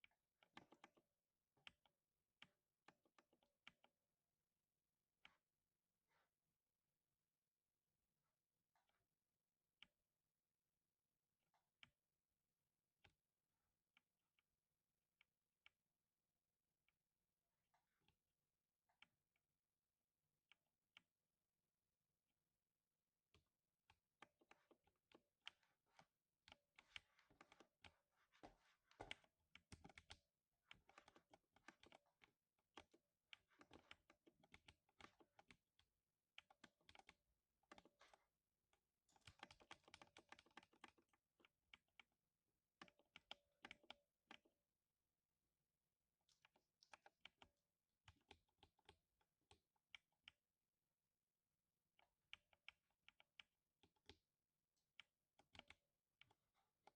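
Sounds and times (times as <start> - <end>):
quiet mechanical keyboard typing: 22.6 - 44.7, 46.1 - 50.6, 51.8 - 56.9.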